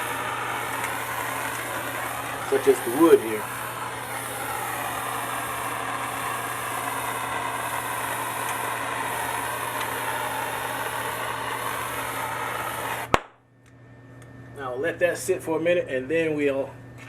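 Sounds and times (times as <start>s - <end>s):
gas torch flame hissing: 0.0s - 13.2s.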